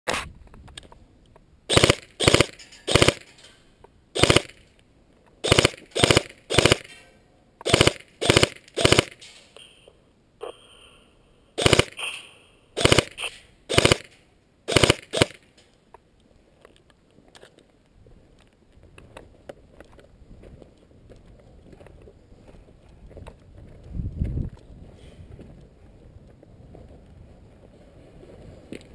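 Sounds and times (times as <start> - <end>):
automatic gunfire bursts: 1.7 - 3.3, 4.2 - 4.6, 5.4 - 7.0, 7.6 - 9.2, 11.6 - 12.0, 12.8 - 15.4.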